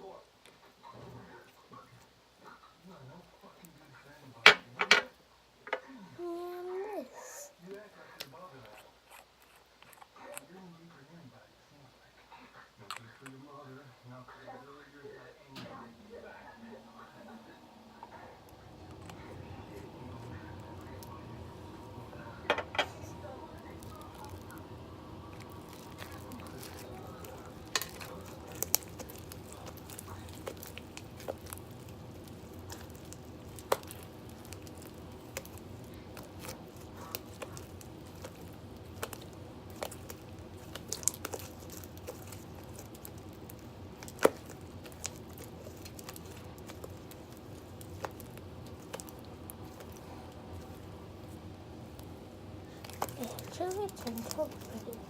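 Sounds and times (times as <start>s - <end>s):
low room hum: 0.0s - 55.0s
slime clicks and squishes: 23.6s - 24.6s, 25.2s - 50.8s, 52.8s - 55.0s.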